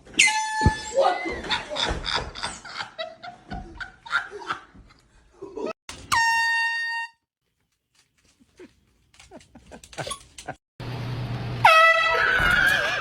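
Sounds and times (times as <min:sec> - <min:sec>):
air horn blast: 0:11.6 - 0:12.5.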